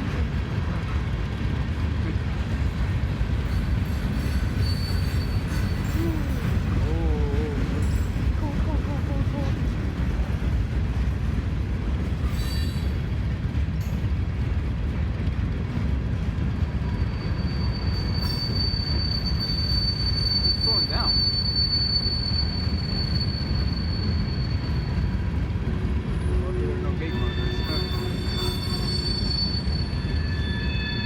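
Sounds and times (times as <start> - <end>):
freight train rumbling past: 0.0 - 31.0
high wheel squeal: 3.5 - 8.7, 12.1 - 13.2, 16.8 - 31.0.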